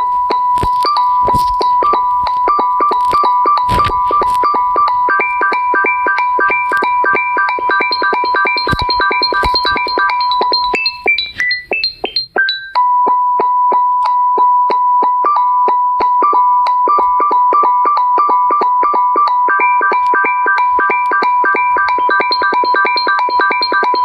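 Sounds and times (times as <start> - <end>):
electronic ringtone melody: 0.0 - 24.0.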